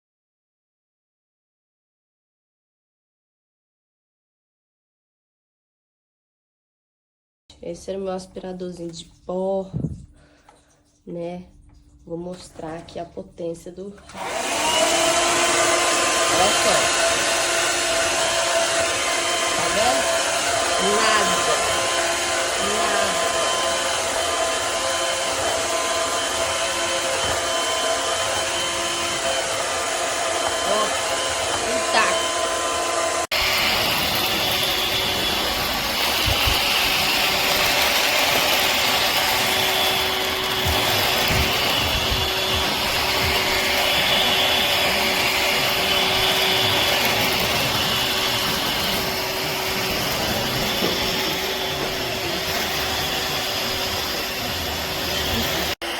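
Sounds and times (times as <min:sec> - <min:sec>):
vacuum motor whining: 0:14.0 - 0:55.9.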